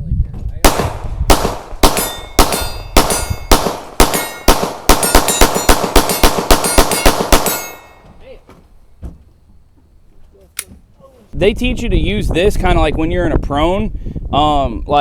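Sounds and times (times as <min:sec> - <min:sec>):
gunshots with metallic ring: 0:00.6 - 0:08.0.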